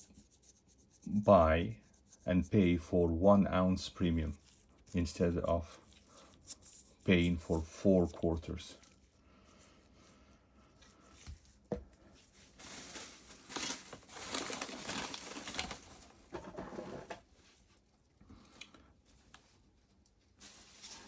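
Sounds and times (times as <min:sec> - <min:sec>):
plastic packaging rustling: 0:12.3 - 0:17.2, 0:20.3 - 0:21.0.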